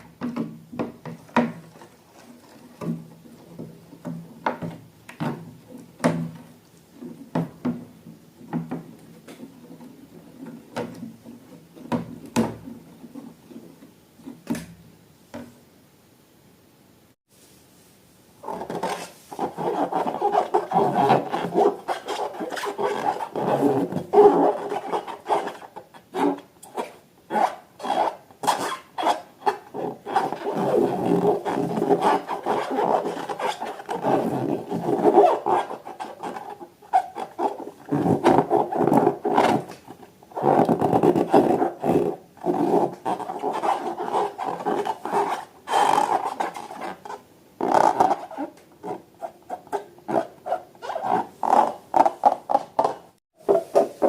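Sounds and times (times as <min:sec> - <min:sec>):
balloons squeaking when rubbed: 0:18.4 - 0:54.0.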